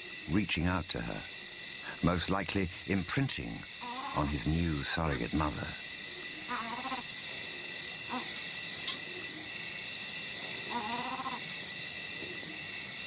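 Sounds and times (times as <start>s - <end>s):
insects chorus: 0.0s - 13.0s
wavering animal cry: 3.8s - 4.4s, 6.1s - 9.5s, 10.6s - 11.6s.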